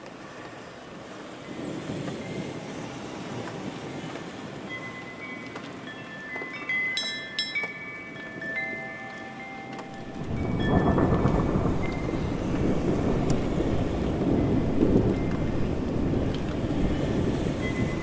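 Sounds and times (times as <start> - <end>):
steady rain: 0.0 - 18.0
thunder rumbling: 9.8 - 18.0.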